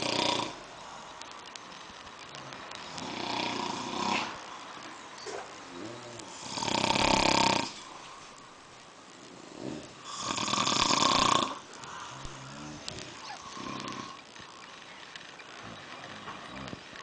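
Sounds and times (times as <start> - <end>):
men snoring: 0.0 - 0.6, 2.8 - 4.4, 5.7 - 7.9, 9.4 - 14.3.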